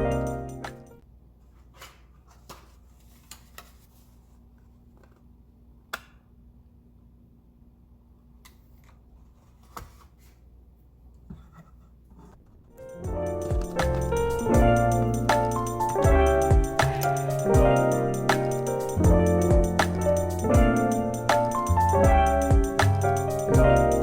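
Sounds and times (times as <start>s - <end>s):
background music: 0.0s - 1.0s, 12.8s - 24.0s.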